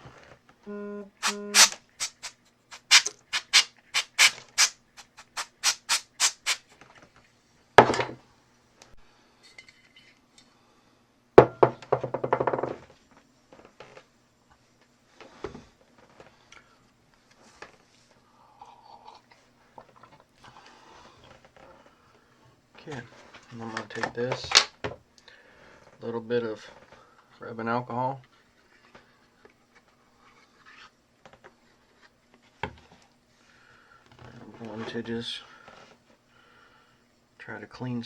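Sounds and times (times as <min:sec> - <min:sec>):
compressed air hissing: 0:01.2 - 0:06.6.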